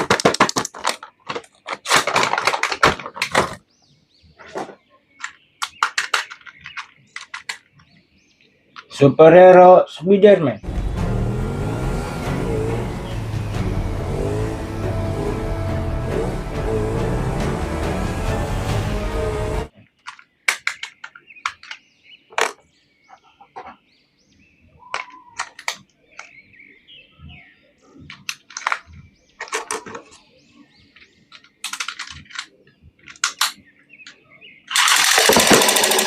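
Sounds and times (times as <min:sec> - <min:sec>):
plastic toys being handled: 0:00.0 - 0:03.7, 0:04.4 - 0:07.9, 0:19.7 - 0:22.7, 0:28.0 - 0:36.0.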